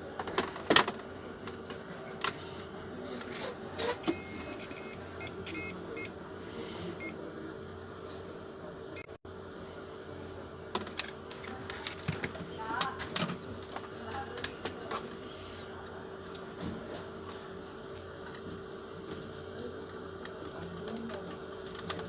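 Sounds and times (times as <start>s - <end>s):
steady hum: 0.0s - 21.8s
short electronic beeps: 4.0s - 6.1s.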